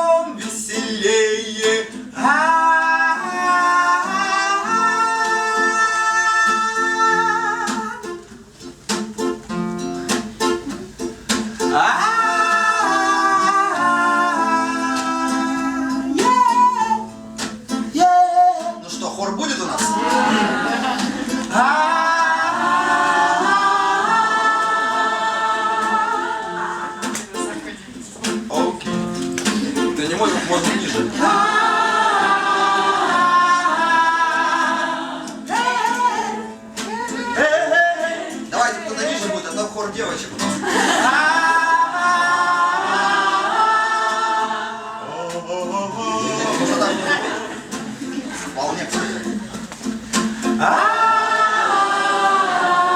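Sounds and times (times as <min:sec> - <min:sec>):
person singing long notes: 0:00.0 - 0:08.2, 0:11.7 - 0:17.1, 0:19.9 - 0:27.1
person singing unaccompanied: 0:00.0 - 0:08.2, 0:11.6 - 0:18.9, 0:19.8 - 0:27.6, 0:30.6 - 0:39.4, 0:40.6 - 0:47.5, 0:50.2 - 0:52.9
acoustic guitar strumming: 0:00.0 - 0:52.9.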